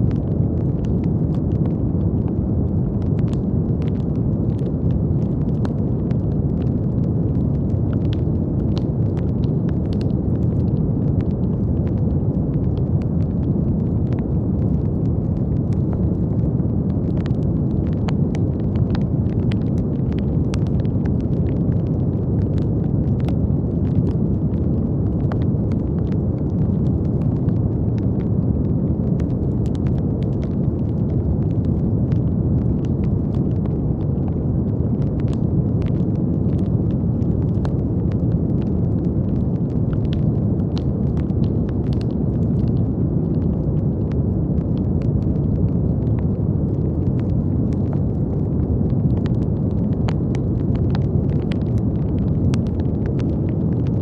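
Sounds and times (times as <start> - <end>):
brown noise hiss: 0.0 - 54.0
faint crackles and clicks: 0.0 - 54.0.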